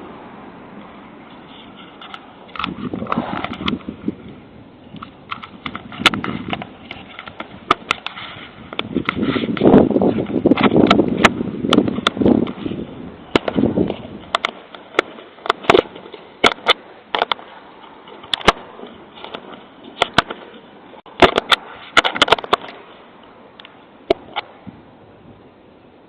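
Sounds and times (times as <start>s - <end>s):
sharp clicks and knocks: 5.0s - 12.6s, 13.3s - 22.8s.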